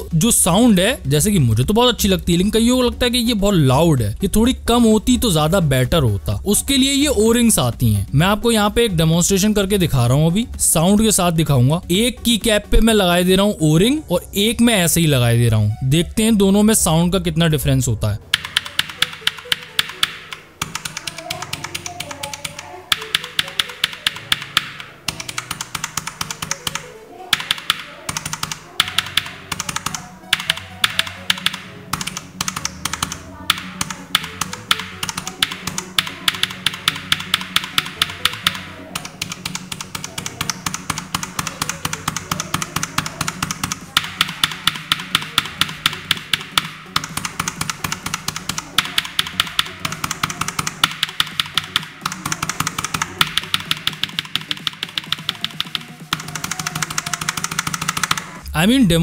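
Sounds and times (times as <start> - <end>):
clicky keyboard keys pressed: 18.3 - 58.4.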